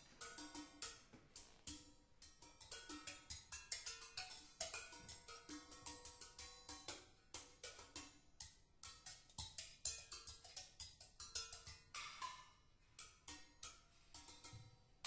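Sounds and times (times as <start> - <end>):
drums and percussion strikes: 8.9 - 12.4.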